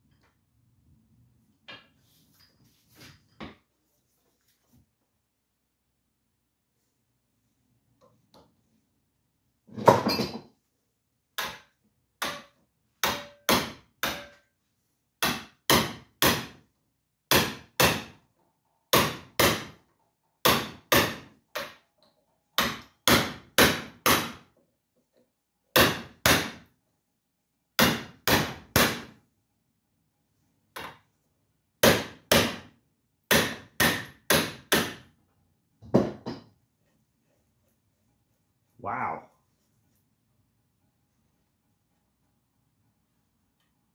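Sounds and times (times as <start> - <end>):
hammer striking metal: 11.4 - 14.5, 33.3 - 35.0.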